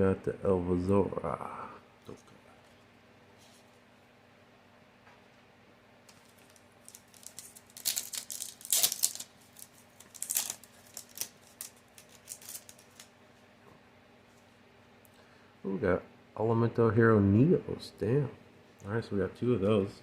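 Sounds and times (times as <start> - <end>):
foil packs crinkling and rustling: 6.1 - 13.1.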